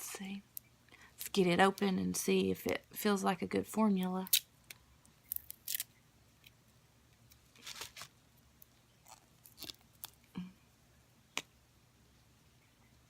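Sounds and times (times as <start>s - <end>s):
short rustle: 7.5s - 8.1s.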